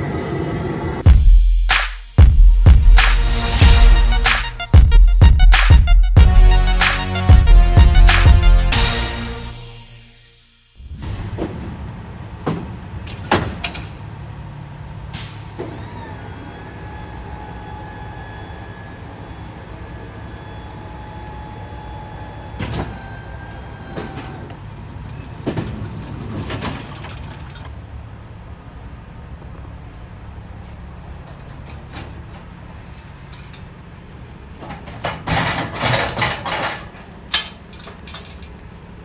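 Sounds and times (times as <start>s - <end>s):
whine: 5.6s - 11.5s, 16.4s - 24.4s
clunks and knocks: 12.4s - 14.0s, 21.8s - 27.7s, 34.5s - 38.6s.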